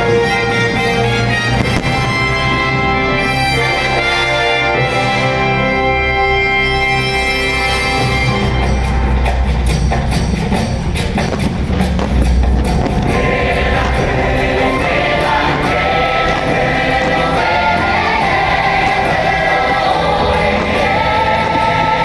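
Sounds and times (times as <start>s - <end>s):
deep firework booms: 0.0s - 4.4s, 7.8s - 22.0s
firework bursts and crackle: 0.0s - 5.4s, 7.1s - 22.0s
choir singing with music: 12.1s - 22.0s.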